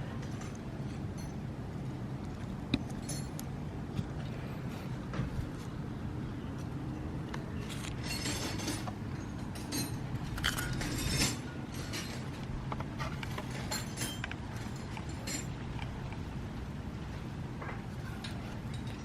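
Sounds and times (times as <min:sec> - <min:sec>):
low background rumble: 0:00.0 - 0:19.0.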